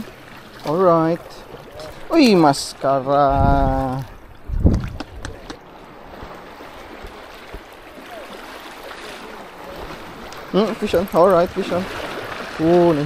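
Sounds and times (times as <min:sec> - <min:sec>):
water splashing: 0:00.0 - 0:13.0
wind buffeting microphone: 0:03.2 - 0:07.7.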